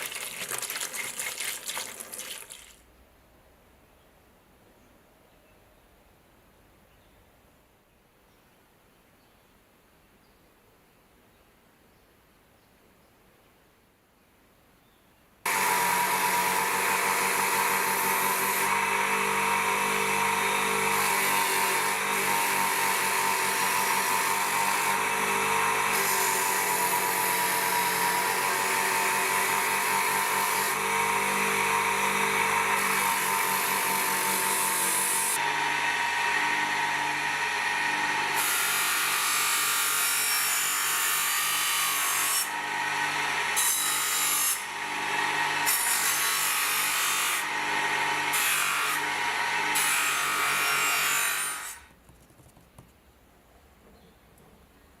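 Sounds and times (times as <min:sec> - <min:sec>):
electric power tool running: 0:15.5 - 0:40.2, 0:42.5 - 0:50.9.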